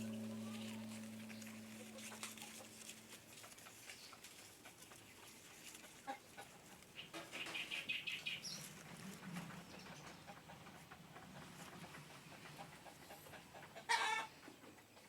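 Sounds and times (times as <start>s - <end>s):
bird chirping: 0.0s - 3.1s.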